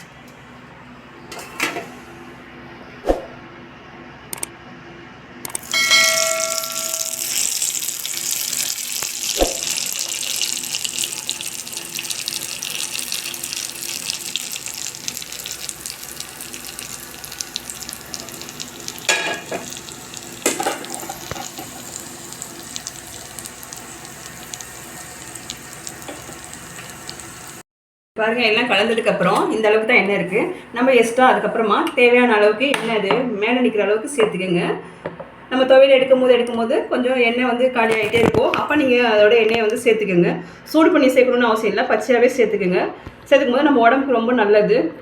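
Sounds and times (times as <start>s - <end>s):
hot oil sizzling: 5.6s - 27.6s
short metallic ring: 5.7s - 7.4s.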